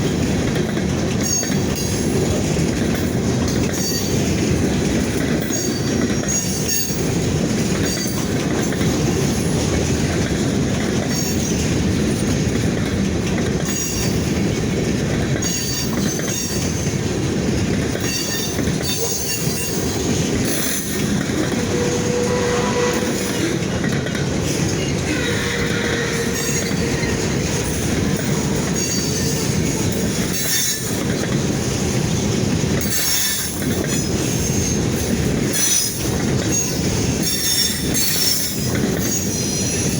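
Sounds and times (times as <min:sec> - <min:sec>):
wheels clacking over rail joints: 0:00.0 - 0:39.9
wheels squealing: 0:18.0 - 0:23.6, 0:24.7 - 0:30.9.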